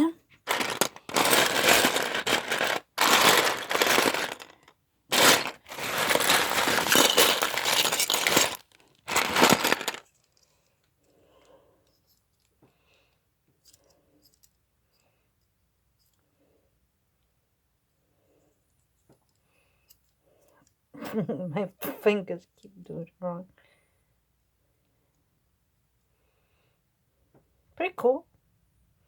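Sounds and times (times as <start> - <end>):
faint clicks of plastic pieces: 0.4 - 16.4, 18.4 - 20.8
plastic toy bricks clattering: 0.5 - 10.3.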